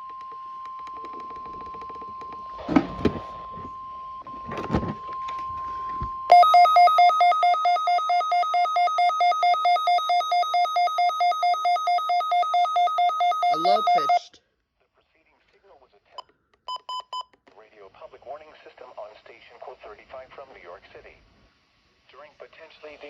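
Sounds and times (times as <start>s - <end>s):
steady warning alarm tone: 0.0s - 14.3s
electronic alarm pulsing two pitches: 5.7s - 14.2s.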